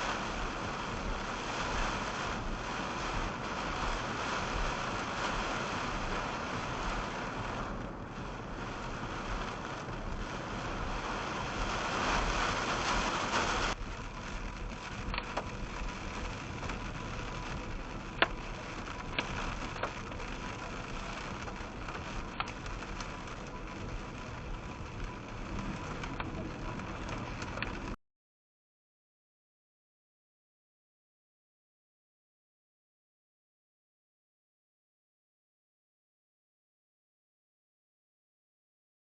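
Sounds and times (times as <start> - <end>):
rain on a vehicle: 0.0 - 28.0.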